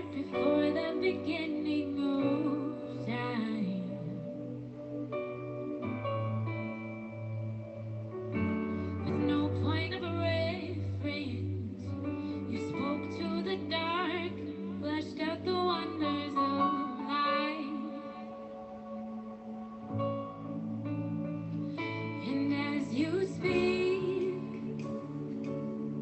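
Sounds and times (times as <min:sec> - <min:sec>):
woman singing slow song: 0:00.0 - 0:04.7, 0:09.0 - 0:19.4, 0:22.0 - 0:25.8
sustained instrumental chords: 0:00.0 - 0:26.0.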